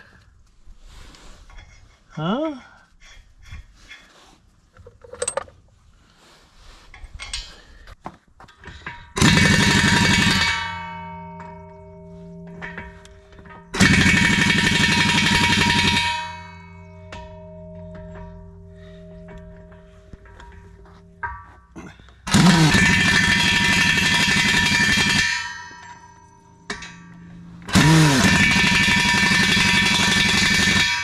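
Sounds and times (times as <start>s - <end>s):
metal nuts clinking: 4.7s - 5.6s
impact wrench rattling: 8.6s - 31.0s
steel wheel ringing metallic hum: 8.9s - 31.0s.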